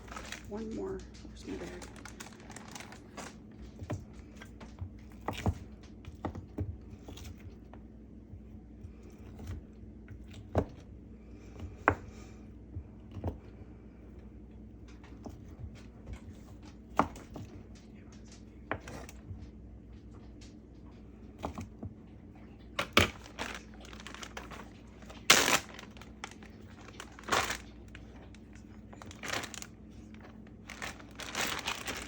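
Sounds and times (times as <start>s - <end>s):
faint steady hum: 0.0s - 32.0s.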